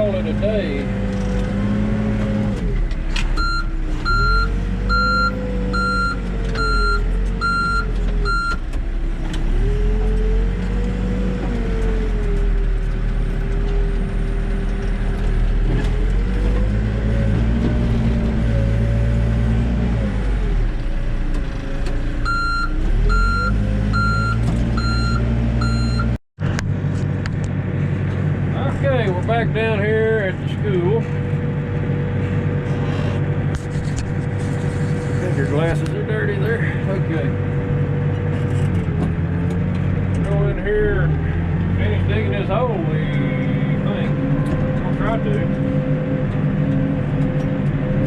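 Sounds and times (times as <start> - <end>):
backhoe diesel engine: 0.0 - 48.0
reversing alarm beeping: 3.4 - 8.6, 22.2 - 26.2.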